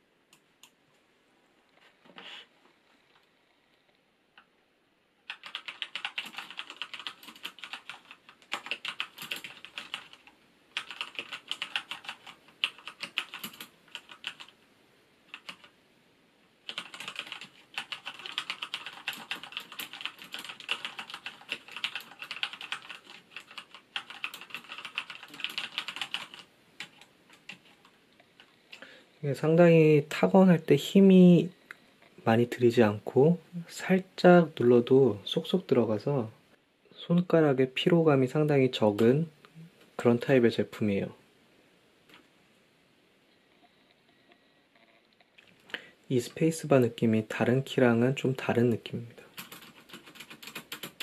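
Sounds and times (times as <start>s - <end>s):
fast typing on mechanical keyboard: 5.3s - 14.6s, 15.3s - 15.7s, 16.6s - 28.5s, 49.3s - 51.0s.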